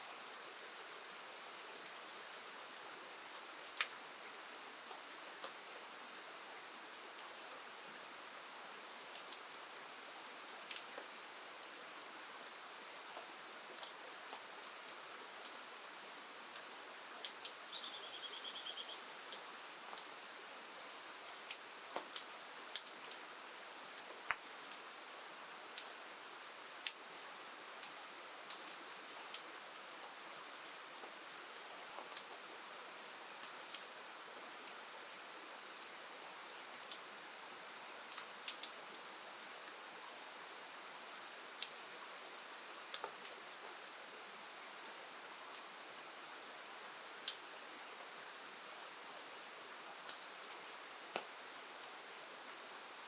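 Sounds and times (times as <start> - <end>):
rain hissing: 0.0 - 6.1.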